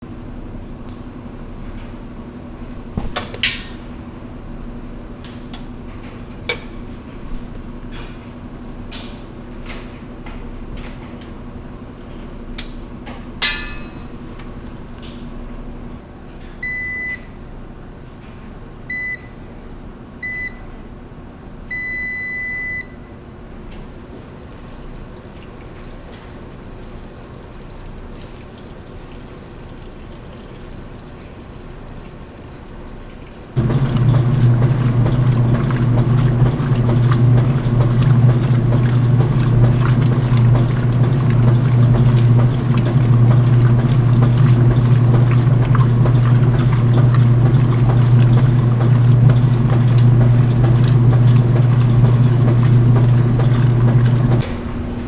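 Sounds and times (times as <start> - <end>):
washing machine humming: 0.0 - 55.0
control panel beeps: 16.6 - 17.3, 18.9 - 19.4, 20.2 - 20.7, 21.7 - 23.0.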